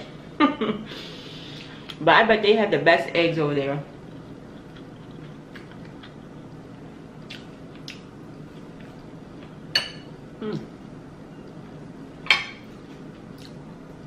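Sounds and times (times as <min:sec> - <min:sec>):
faint steady hum: 0:00.0 - 0:14.0
chewing: 0:04.0 - 0:06.5, 0:13.2 - 0:13.6.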